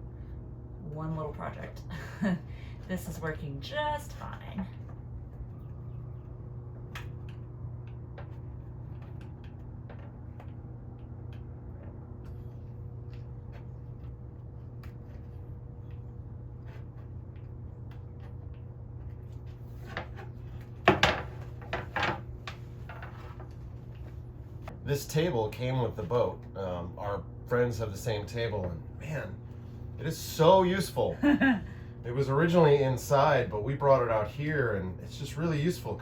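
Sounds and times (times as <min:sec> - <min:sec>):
steady low hum: 0:00.0 - 0:36.0
frame knocking and rattling: 0:19.8 - 0:23.5.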